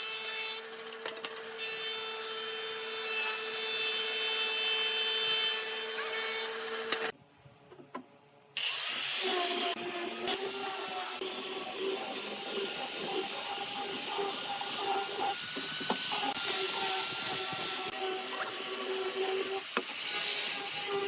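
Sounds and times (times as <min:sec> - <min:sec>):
power tool motor whining: 0:08.6 - 0:21.0.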